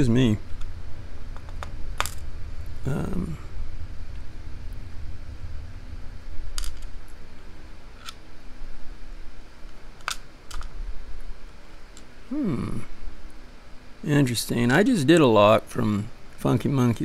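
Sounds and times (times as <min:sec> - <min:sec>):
handling rumble: 0:00.0 - 0:11.6.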